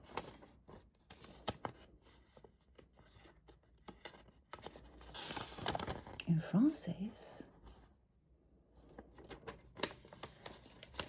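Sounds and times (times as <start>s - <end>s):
paper rustling: 0.0s - 6.2s, 8.8s - 11.0s
small clicks and crackles: 8.9s - 11.0s.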